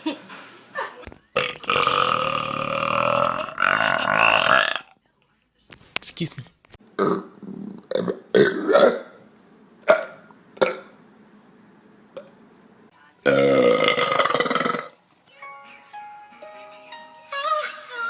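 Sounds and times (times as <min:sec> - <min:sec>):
man belching: 0:01.4 - 0:04.9, 0:07.0 - 0:09.2, 0:09.9 - 0:10.9, 0:13.3 - 0:15.0.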